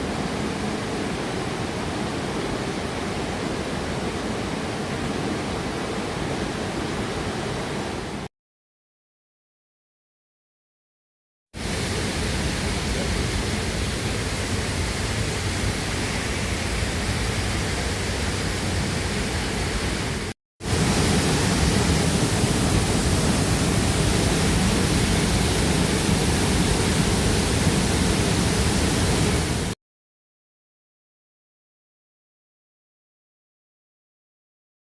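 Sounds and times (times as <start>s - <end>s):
waterfall rushing: 11.6s - 29.8s.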